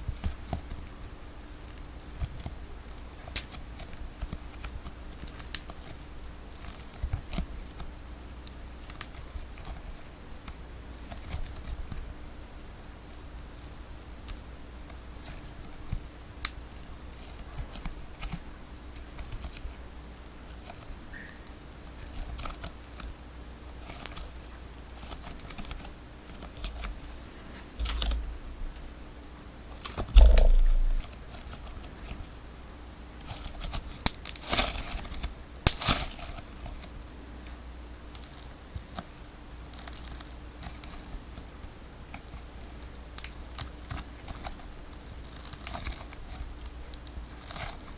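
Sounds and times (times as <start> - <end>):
loud thump: 30.2 - 31.1
tape tearing and crinkling: 33.9 - 36.6.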